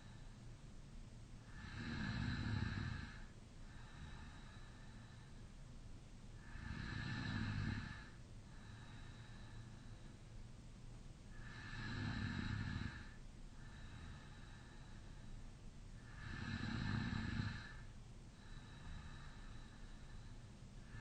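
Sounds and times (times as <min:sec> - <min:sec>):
quiet breaths: 0:00.0 - 0:21.0
man snoring: 0:01.5 - 0:04.4, 0:06.4 - 0:08.9, 0:11.4 - 0:14.3, 0:16.1 - 0:17.9.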